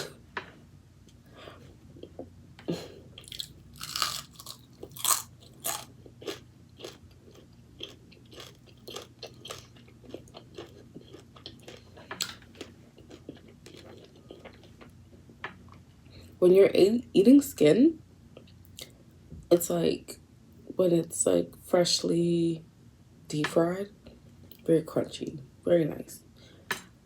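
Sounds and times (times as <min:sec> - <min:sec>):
person chewing crunchy food: 0:03.2 - 0:15.2.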